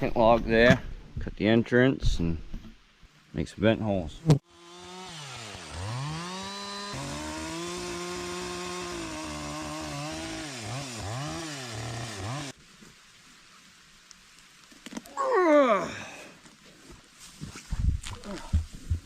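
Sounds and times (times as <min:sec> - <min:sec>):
chainsaw cutting log: 0:04.4 - 0:12.6.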